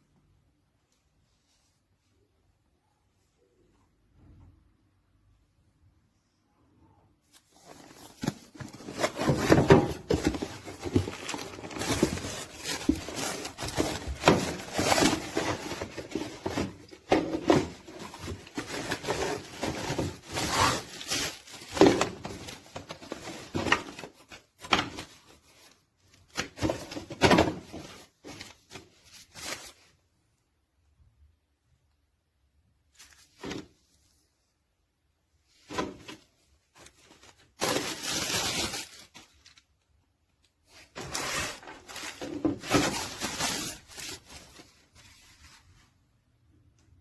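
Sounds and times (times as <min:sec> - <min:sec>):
objects rustling and rubbing: 0:07.3 - 0:25.7, 0:40.6 - 0:46.0.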